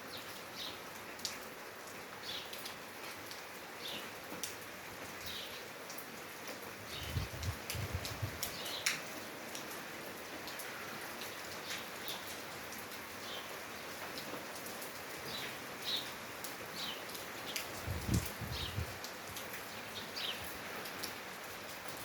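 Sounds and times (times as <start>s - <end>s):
rain pattering and dripping: 0.0s - 22.0s
wind buffeting microphone: 6.9s - 8.5s, 17.8s - 19.0s.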